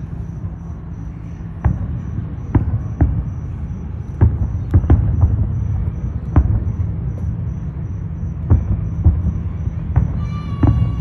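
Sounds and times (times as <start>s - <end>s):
continuous low rumble: 0.0s - 11.0s
fireworks booming: 1.4s - 11.0s.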